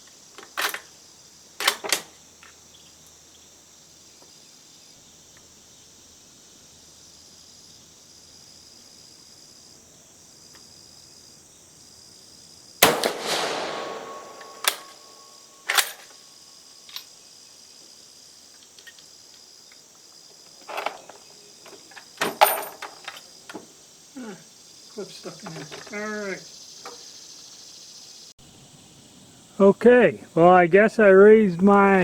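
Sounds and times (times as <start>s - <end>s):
crickets chirping: 0.0s - 32.0s
rifle bolt clicking: 12.8s - 15.1s
rifle shot: 12.8s - 15.9s.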